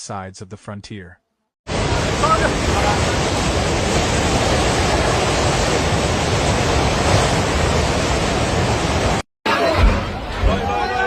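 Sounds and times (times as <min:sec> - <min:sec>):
floodwater rushing: 0:01.7 - 0:09.2.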